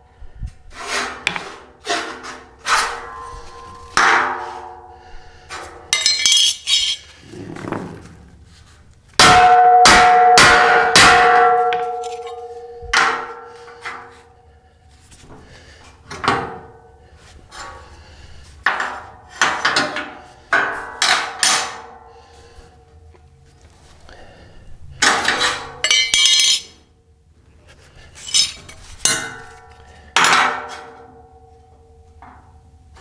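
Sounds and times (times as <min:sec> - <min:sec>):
hammer striking ringing steel: 0:05.9 - 0:07.0, 0:09.2 - 0:14.1, 0:25.8 - 0:26.7.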